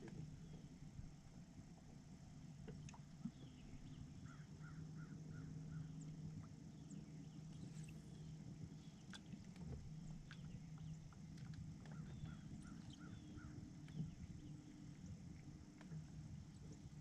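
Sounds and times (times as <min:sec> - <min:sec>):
faint low hum: 0:00.0 - 0:17.0
bird calling: 0:04.2 - 0:06.1, 0:11.8 - 0:14.2.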